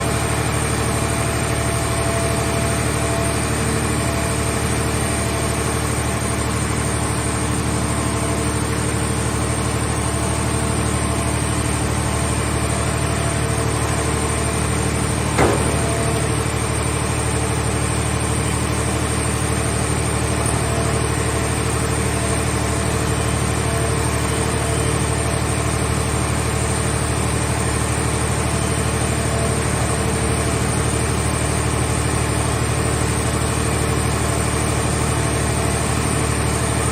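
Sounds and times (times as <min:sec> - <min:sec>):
engine running steadily: 0:00.0 - 0:36.9
sharp knock: 0:15.4 - 0:16.3.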